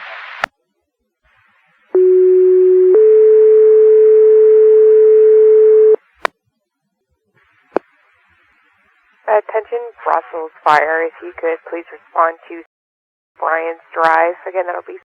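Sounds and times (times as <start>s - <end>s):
radio hiss: 0.0s - 0.5s, 7.4s - 12.6s.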